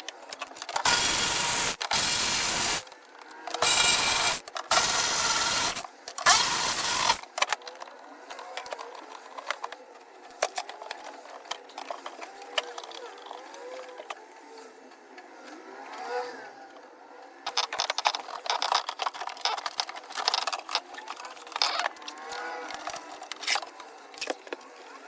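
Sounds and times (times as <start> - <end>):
handheld power tool running: 0.6 - 7.4.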